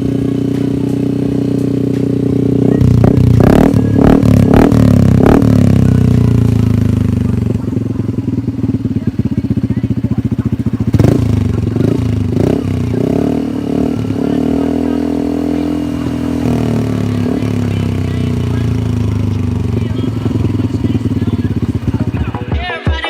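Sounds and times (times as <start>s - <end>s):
motorcycle engine idling and revving: 0.0s - 22.7s.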